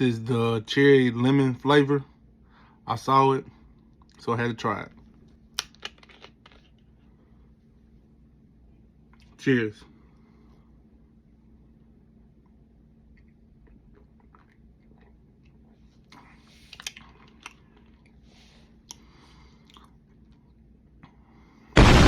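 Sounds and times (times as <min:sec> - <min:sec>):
sips swallows and lip smacks: 0:13.1 - 0:18.2.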